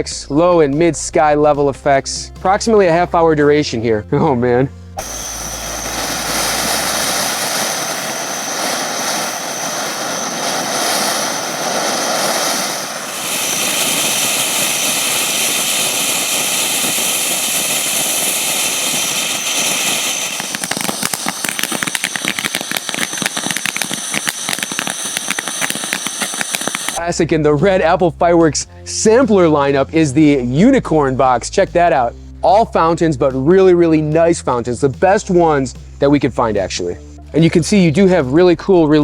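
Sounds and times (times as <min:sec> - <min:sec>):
fireworks fountain hissing: 0:05.0 - 0:27.0
rapid fireworks crackling: 0:05.0 - 0:27.0.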